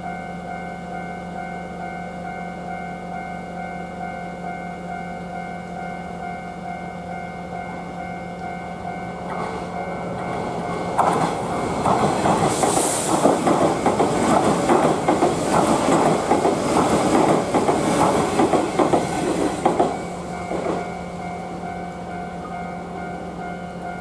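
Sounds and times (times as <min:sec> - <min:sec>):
train wheels clattering over rail joints: 0:09.3 - 0:20.9.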